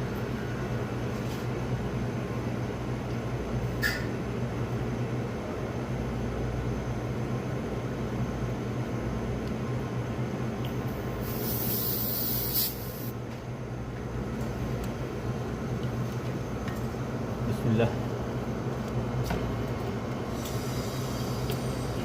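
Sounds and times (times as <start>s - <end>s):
low hum of equipment: 0.0s - 22.0s
gas hissing: 11.1s - 13.2s, 20.3s - 22.0s.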